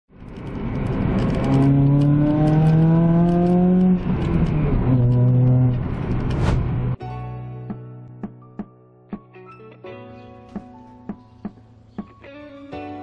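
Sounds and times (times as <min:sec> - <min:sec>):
car engine accelerating: 0:00.4 - 0:07.0.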